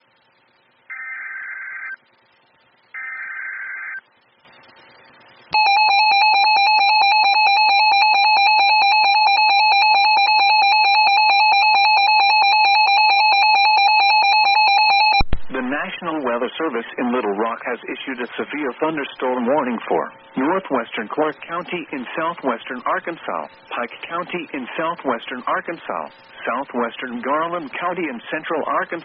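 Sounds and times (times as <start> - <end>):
buzzy digital header tones: 0.0 - 17.3.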